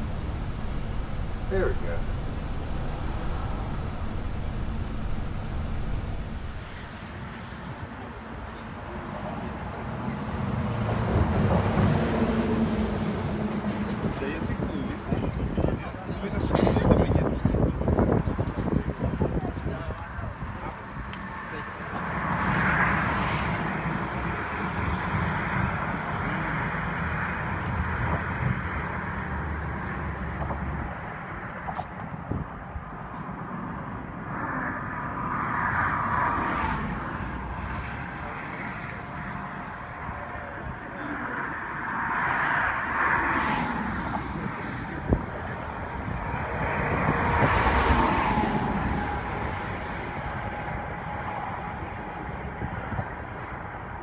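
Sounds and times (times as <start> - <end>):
faint steady whine: 0.0 - 7.0
vehicle engine and road noise: 0.0 - 8.1.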